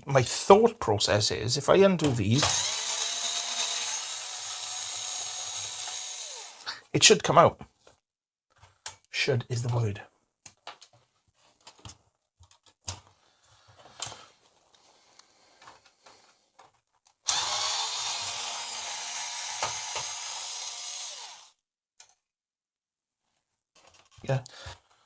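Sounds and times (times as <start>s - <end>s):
electric screwdriver running: 2.4s - 6.7s, 17.3s - 21.5s.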